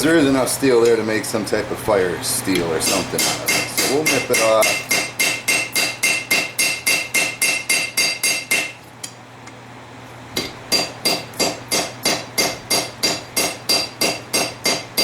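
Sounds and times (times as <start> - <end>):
hammer striking metal on anvil: 2.8 - 8.8, 10.4 - 15.0.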